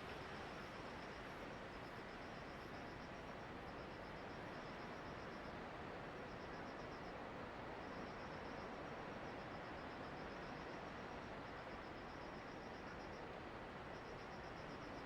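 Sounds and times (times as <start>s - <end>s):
faint insect chirping: 0.1s - 5.6s, 7.8s - 15.0s.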